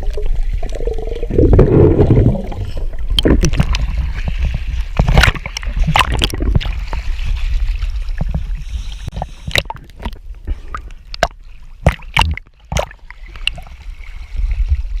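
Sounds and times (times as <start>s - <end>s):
water splashing and sloshing: 0.0s - 15.0s
sharp water slaps: 11.8s - 13.0s.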